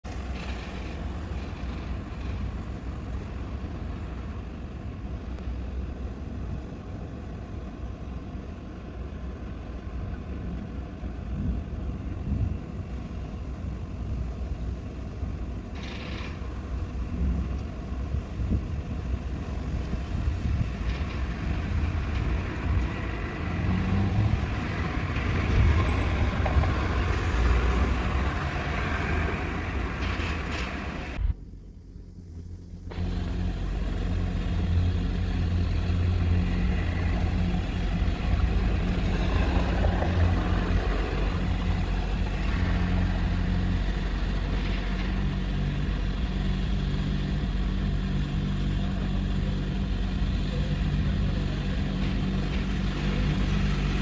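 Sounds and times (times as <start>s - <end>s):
distant thunder rumbling: 16.5s - 31.3s.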